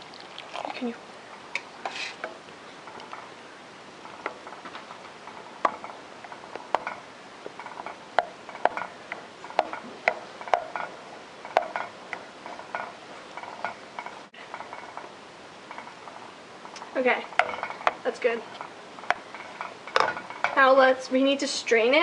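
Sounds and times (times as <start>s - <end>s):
spoon scraping a pot: 1.8s - 3.3s.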